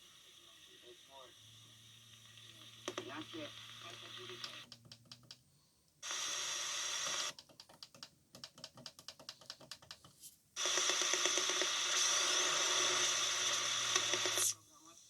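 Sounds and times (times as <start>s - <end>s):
radio static hiss: 0.0s - 4.7s, 6.0s - 7.3s, 10.6s - 15.0s.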